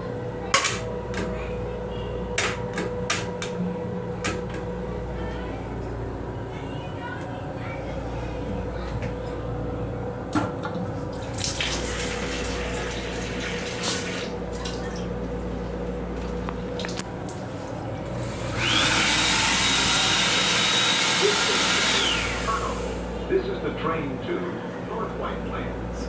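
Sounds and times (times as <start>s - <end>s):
train running hum: 0.0s - 13.5s, 16.6s - 26.0s
water running from tap: 10.7s - 15.1s, 16.2s - 23.3s.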